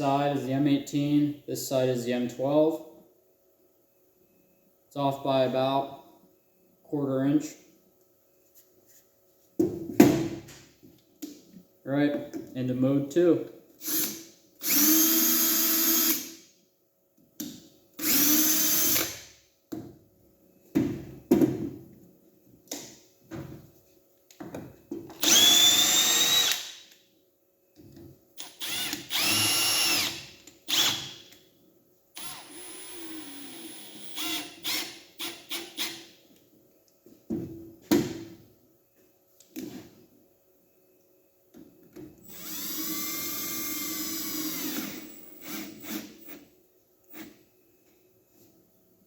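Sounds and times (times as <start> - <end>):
cordless drill motor whine: 13.8 - 16.3, 18.0 - 19.1, 25.2 - 26.7, 28.4 - 31.1, 32.2 - 35.9, 42.2 - 46.4.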